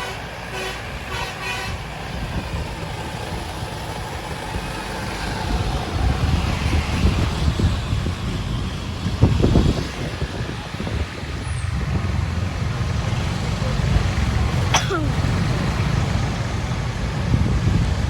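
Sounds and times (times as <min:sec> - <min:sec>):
multi-tone bus horn: 0:00.0 - 0:02.1
heavy vehicle engine rumble: 0:00.0 - 0:18.0
road noise: 0:00.0 - 0:18.0.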